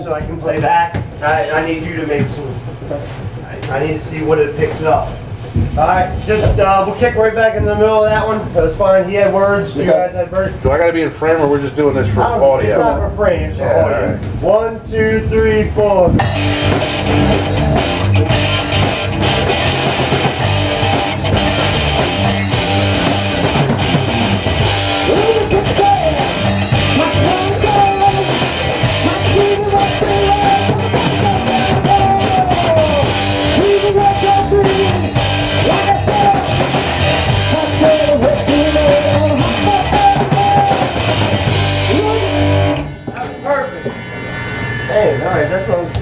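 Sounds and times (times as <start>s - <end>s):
rock band playing live: 16.2s - 44.6s
person singing: 25.0s - 41.1s.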